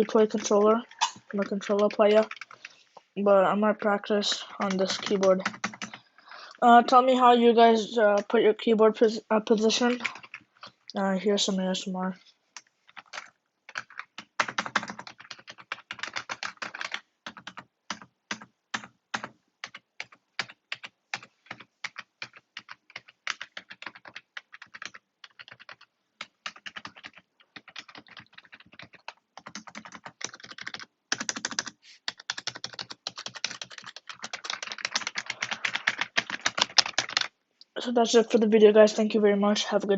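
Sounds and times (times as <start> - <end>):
typing on a keyboard: 0.0 - 2.7, 4.6 - 6.0, 9.8 - 10.4, 12.9 - 37.3.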